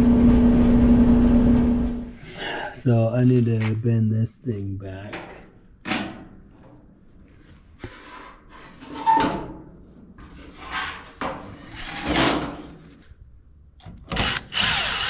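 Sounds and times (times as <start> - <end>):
power drill running: 14.1 - 15.0.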